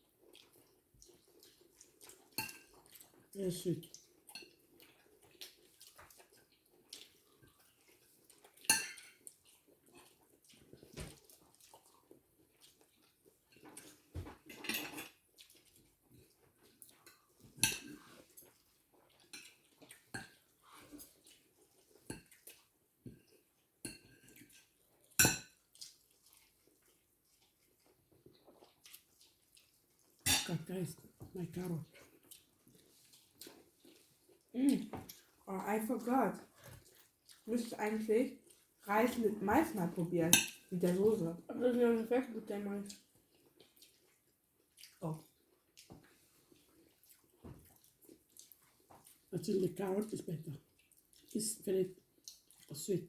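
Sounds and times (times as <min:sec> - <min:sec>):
faint eating noises: 0:00.0 - 0:53.0
cutlery clinking on plates: 0:02.4 - 0:02.8, 0:08.7 - 0:09.2, 0:13.8 - 0:15.2, 0:17.6 - 0:18.1, 0:23.9 - 0:25.6, 0:30.3 - 0:30.6.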